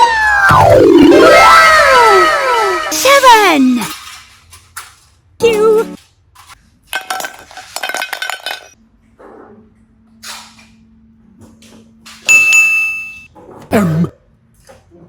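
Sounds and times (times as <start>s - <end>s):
high cartoon voice: 0.0s - 3.9s, 5.4s - 6.0s.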